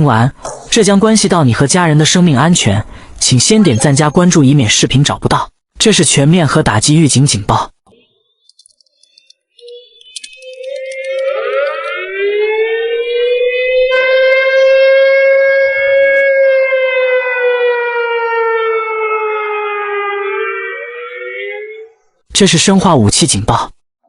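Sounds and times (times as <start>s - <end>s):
civil defence siren wailing: 9.8s - 22.2s.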